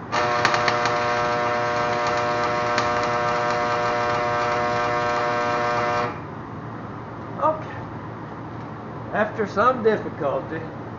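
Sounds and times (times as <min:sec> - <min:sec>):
welding arc buzzing and crackling: 0:00.0 - 0:06.3.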